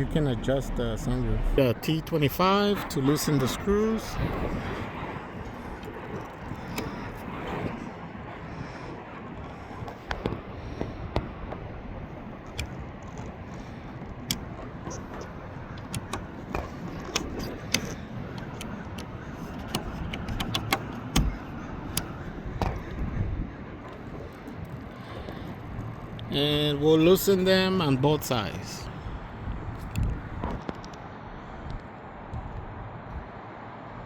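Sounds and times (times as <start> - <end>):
outdoor background hiss: 26.2 - 30.0.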